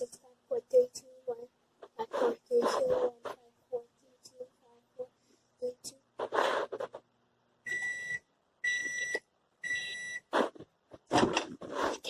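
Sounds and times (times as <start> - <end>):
microwave electronic beeps: 7.6 - 10.3
handling noises: 10.3 - 12.0.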